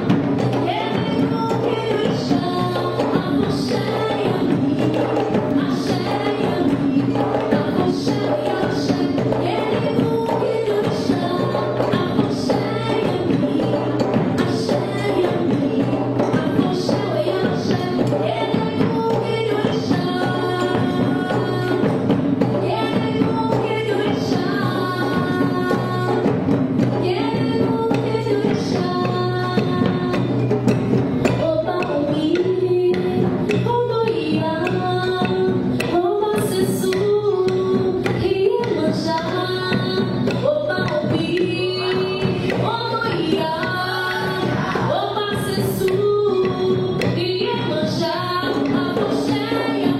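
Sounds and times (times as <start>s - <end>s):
light percussion: 0.0s - 49.9s
person singing: 31.4s - 49.9s.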